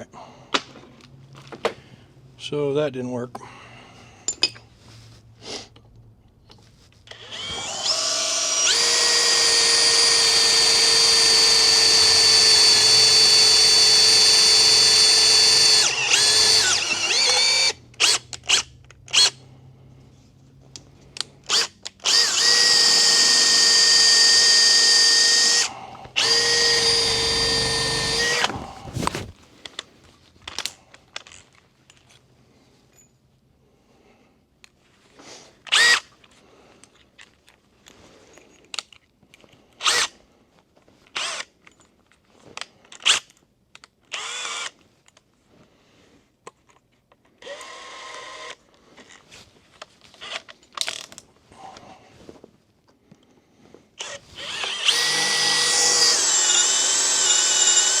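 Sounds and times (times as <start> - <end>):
electric drill drilling into metal: 7.1 - 19.4, 21.5 - 28.7, 35.7 - 36.1, 44.1 - 44.7, 47.4 - 48.6, 54.0 - 58.0.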